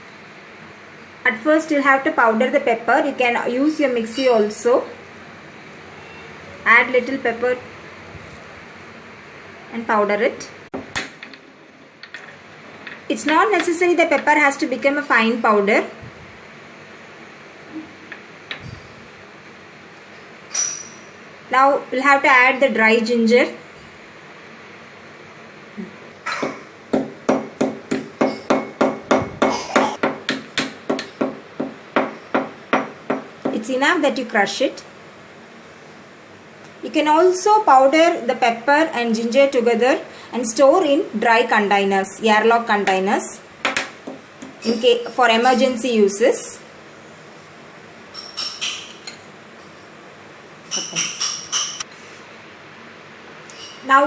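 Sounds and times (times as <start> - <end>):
ginger being pounded: 26.4 - 33.6
utensils clinking against a vessel: 50.7 - 51.8.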